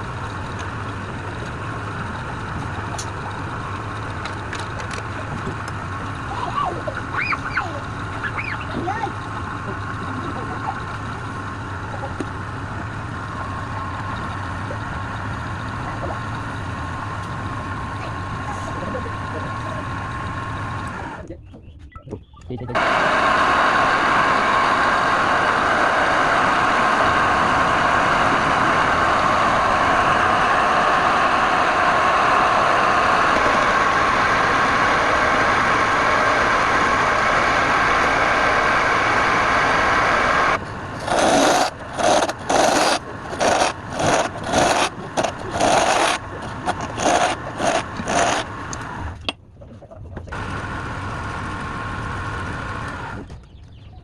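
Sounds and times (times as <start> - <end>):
power tool motor whining: 22.8 - 49.1.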